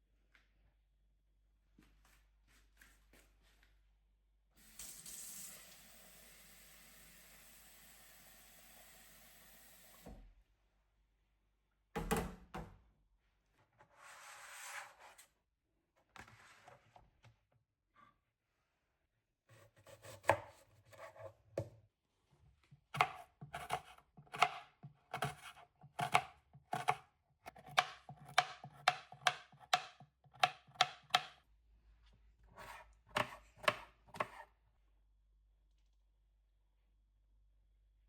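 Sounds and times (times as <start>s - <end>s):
knife chopping on cutting board: 19.6s - 21.7s, 23.0s - 31.4s, 32.6s - 34.5s.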